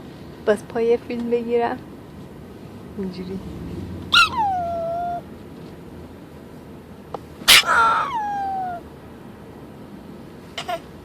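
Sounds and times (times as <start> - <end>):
high-pitched vocal call: 4.0 - 5.3, 7.5 - 8.8.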